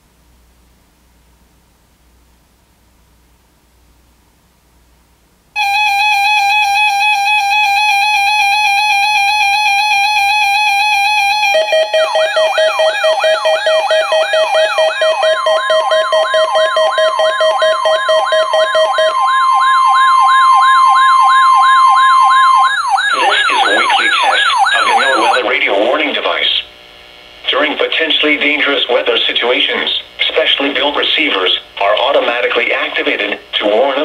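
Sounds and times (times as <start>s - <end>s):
steady buzzy tone: 4.6s - 34.0s
fast wailing siren tone: 5.6s - 25.4s
higher steady tone: 5.6s - 25.5s.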